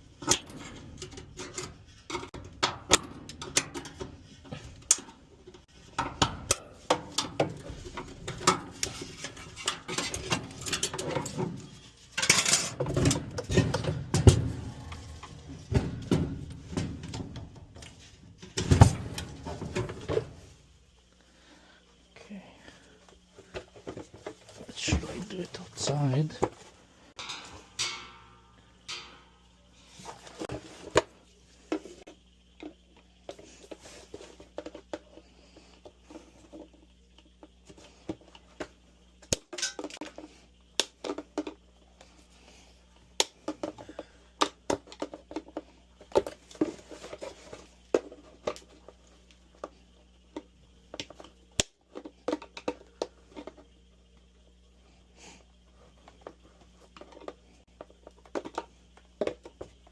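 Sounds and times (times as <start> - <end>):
faint low hum: 0.0 - 59.9
tools and metal parts clinking: 0.1 - 20.4, 27.2 - 29.3, 39.3 - 40.2.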